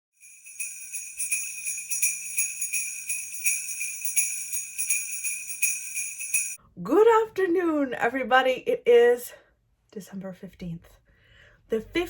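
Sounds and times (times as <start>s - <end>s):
jingle bells shaken: 0.2s - 6.6s.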